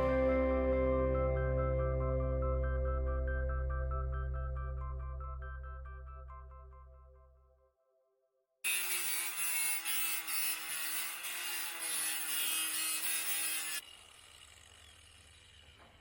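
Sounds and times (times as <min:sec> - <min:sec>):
power tool cutting wood: 0:08.7 - 0:16.0.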